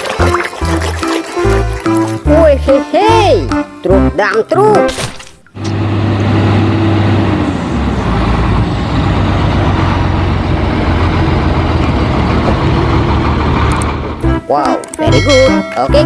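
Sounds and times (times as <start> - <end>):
truck engine rumbling: 5.6 - 16.0.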